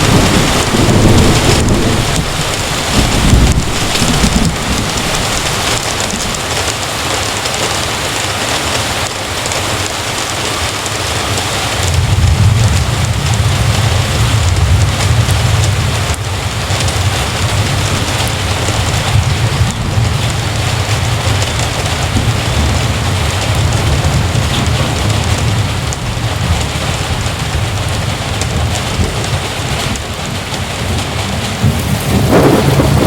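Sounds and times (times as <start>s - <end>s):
low rumble: 0.0s - 6.4s, 11.8s - 27.9s
heavy rain falling: 0.0s - 33.0s.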